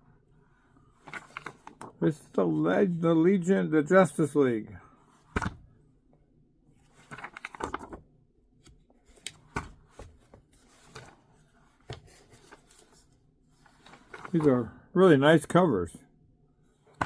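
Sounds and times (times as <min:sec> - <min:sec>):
comic books rustling: 0:00.8 - 0:02.8, 0:05.0 - 0:05.7, 0:06.7 - 0:14.8.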